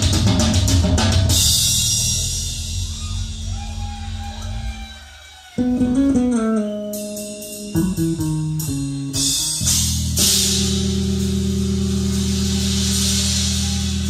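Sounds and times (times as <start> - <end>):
guitar band music over loudspeakers: 5.6 - 14.0.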